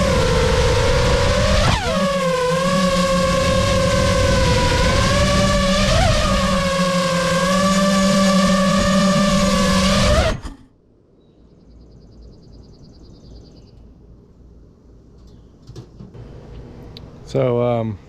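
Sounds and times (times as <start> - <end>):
drone motors whining: 0.0 - 10.7.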